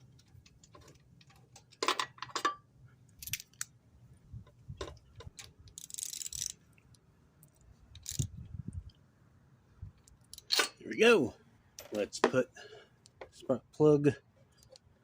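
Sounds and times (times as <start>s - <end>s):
clicks and metallic taps of tools: 13.0s - 13.4s.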